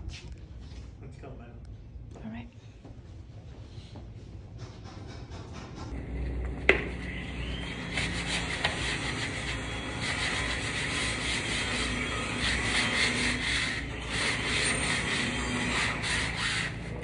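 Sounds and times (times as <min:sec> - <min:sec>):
wood being sanded: 0:07.2 - 0:17.0.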